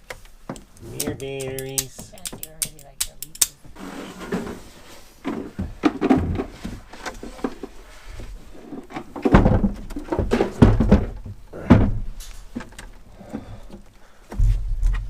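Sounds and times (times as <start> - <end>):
batteries knocking and thudding: 0.4 - 3.6.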